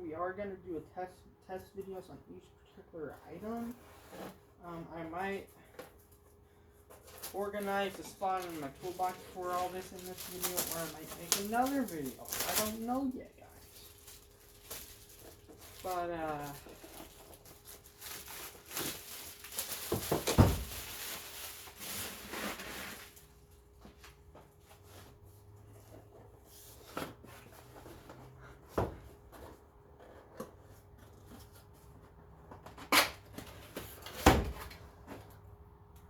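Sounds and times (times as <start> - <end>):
packaging rustling: 6.9 - 24.1.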